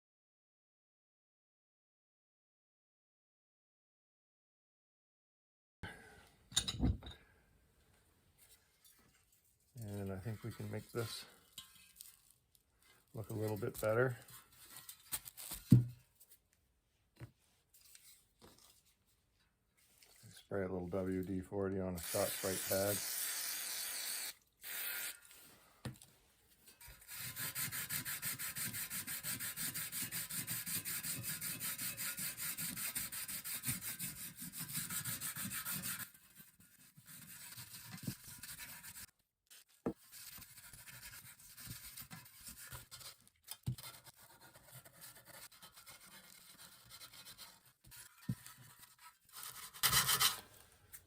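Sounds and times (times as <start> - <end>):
scouring pad scrubbing metal: 22.0 - 23.0, 26.8 - 39.0.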